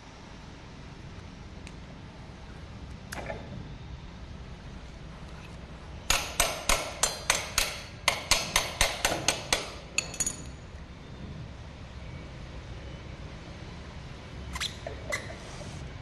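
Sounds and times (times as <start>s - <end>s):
hammer tapping: 6.1s - 9.8s.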